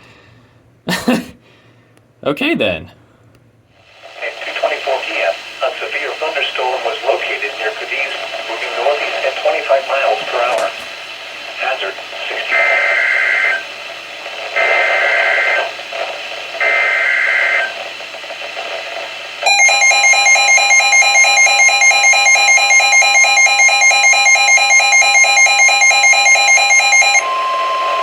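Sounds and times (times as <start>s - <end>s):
steady warning alarm tone: 12.4s - 13.8s, 14.5s - 15.9s, 16.6s - 17.8s, 19.4s - 28.0s
pulsing alarm beeping: 19.4s - 28.0s
two-tone digital bursts: 19.5s - 28.0s.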